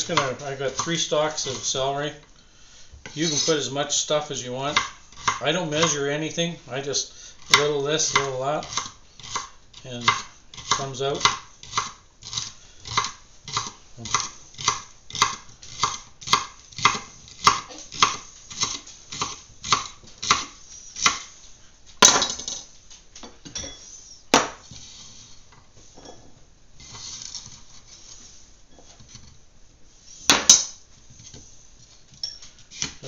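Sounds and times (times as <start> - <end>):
knife chopping on cutting board: 7.5 - 21.3.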